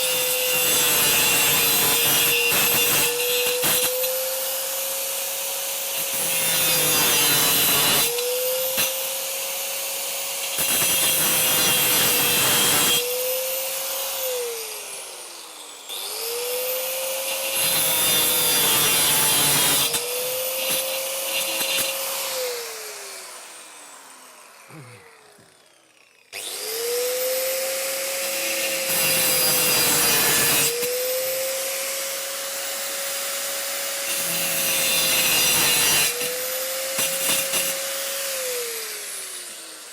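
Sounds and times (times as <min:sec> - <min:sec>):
angle grinder cutting metal: 0:00.0 - 0:39.9
grinder starting with rising whine: 0:20.0 - 0:29.6.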